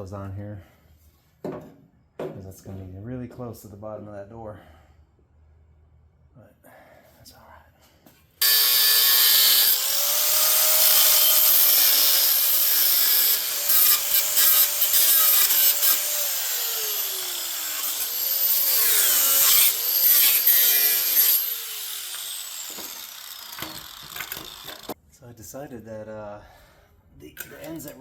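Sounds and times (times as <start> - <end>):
power grinder on metal: 8.4 - 25.0.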